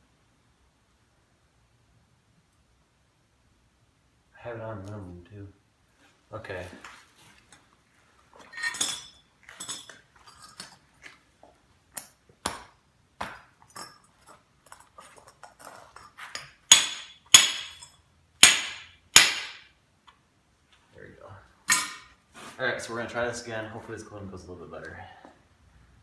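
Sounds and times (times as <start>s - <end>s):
metal pieces clinking: 8.5s - 10.8s
sharp metal strikes: 16.7s - 19.7s.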